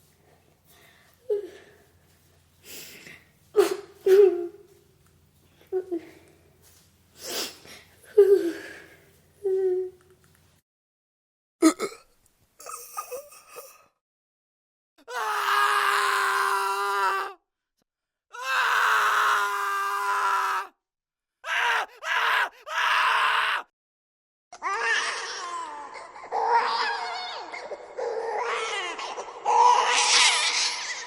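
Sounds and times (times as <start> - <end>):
high-pitched screams: 24.6 - 31.0
wailing screams sliding in pitch: 26.3 - 31.0.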